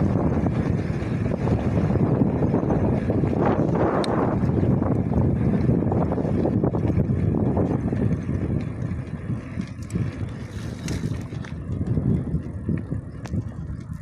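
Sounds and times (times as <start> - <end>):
wind buffeting microphone: 0.0 - 14.0
faint ticks: 8.6 - 14.0.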